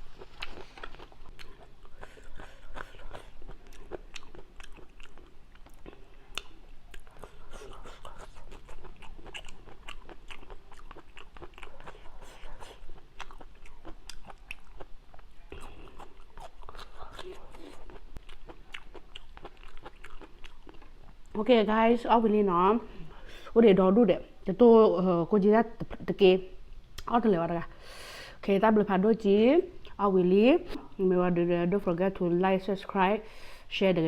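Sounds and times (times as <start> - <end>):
chewing and crunching food: 0.0 - 21.4.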